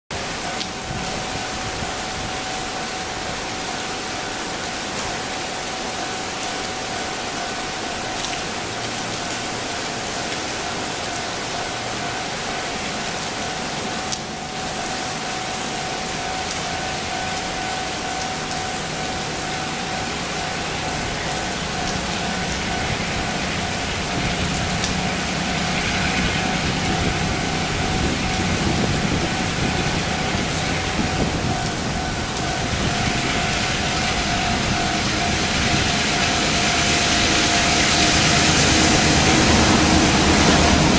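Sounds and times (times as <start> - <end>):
rain-like hiss: 0.1 - 40.9
steady high tone: 9.5 - 40.9
locomotive engine hum: 15.5 - 40.9.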